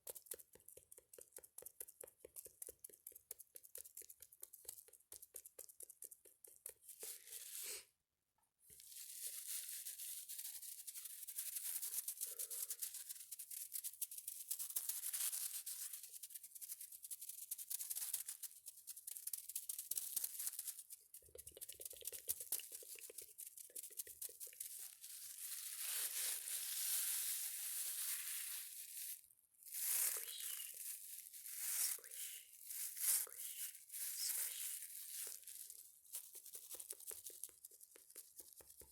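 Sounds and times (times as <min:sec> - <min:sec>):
crinkly scratching and rustling: 0:08.8 - 0:16.2, 0:17.0 - 0:38.6.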